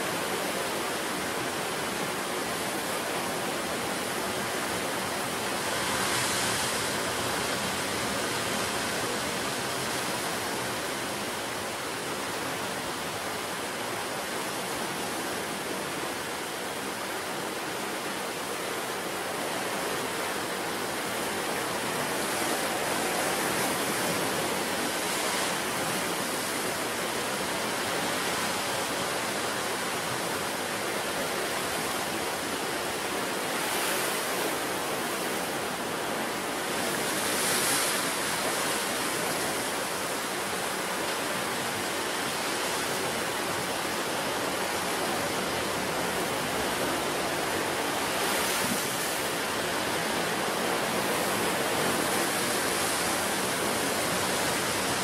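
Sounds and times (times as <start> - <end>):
ocean surf rushing onto shore: 0.0 - 55.0.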